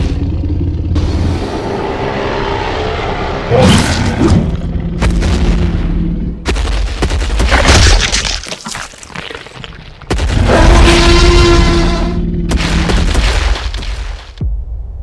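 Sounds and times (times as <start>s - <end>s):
heavy low rumble: 0.0s - 6.4s.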